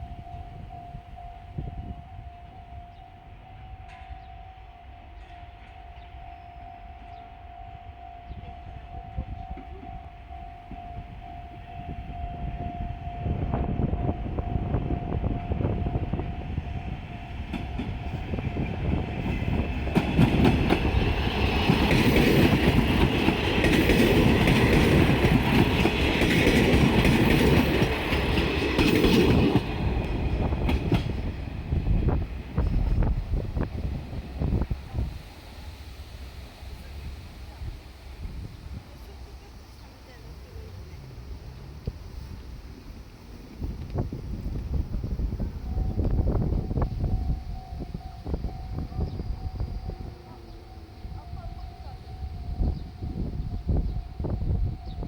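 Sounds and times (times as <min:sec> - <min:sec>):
diesel train passing: 0:00.0 - 0:55.0
wheels clicking over rail joints: 0:14.4 - 0:35.4.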